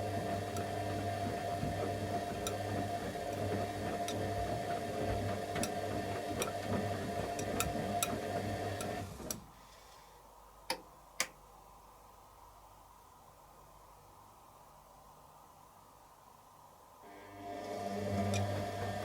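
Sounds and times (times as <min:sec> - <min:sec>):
washing machine motor hum: 0:00.0 - 0:09.6, 0:17.0 - 0:19.0.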